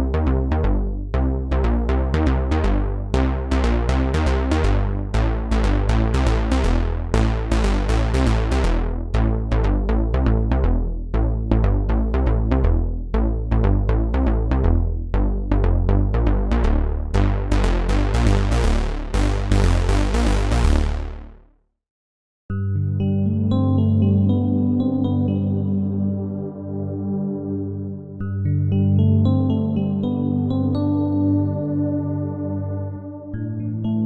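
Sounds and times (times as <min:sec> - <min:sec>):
heavy bass line: 0:00.0 - 0:21.5
synthesizer plucked notes: 0:00.0 - 0:21.5, 0:22.5 - 0:34.0
drum machine beat: 0:05.2 - 0:08.9, 0:17.2 - 0:21.3.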